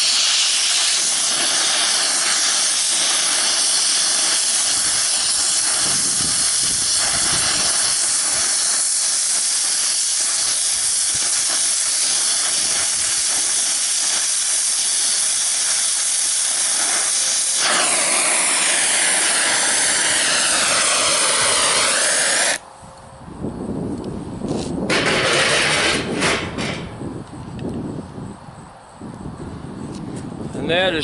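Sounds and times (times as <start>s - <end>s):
welding torch flame hissing: 0.0s - 22.7s, 24.4s - 27.1s
knocks: 24.9s - 26.9s.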